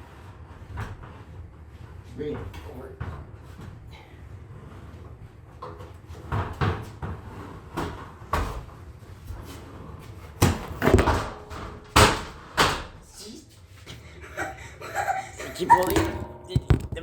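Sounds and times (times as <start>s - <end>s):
hard objects knocking together: 15.7s - 17.0s.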